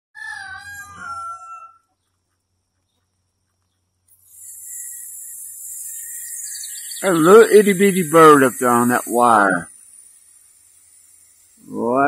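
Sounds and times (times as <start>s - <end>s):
rooster crowing: 0.2s - 1.9s
steady high hiss: 4.1s - 12.0s.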